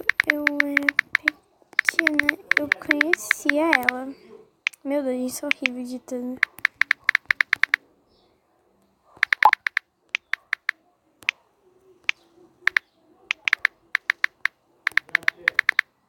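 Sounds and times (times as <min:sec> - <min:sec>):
keyboard typing clicks: 0:00.0 - 0:04.0, 0:05.5 - 0:05.8, 0:06.4 - 0:07.8, 0:09.2 - 0:11.4, 0:12.0 - 0:15.9.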